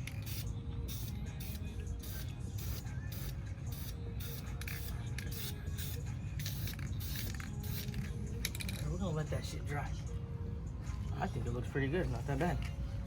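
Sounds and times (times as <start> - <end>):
spray paint can hissing: 0.0 - 8.1.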